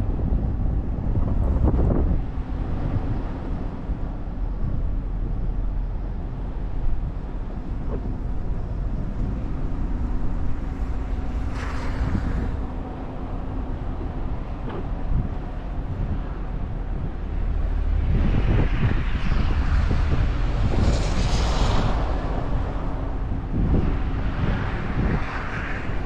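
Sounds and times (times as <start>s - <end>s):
wind rumbling on microphone: 0.0s - 26.0s.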